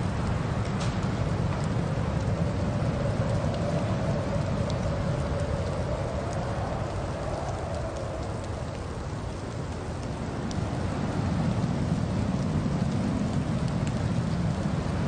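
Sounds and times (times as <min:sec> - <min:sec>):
faint ticks: 0:00.2 - 0:10.6.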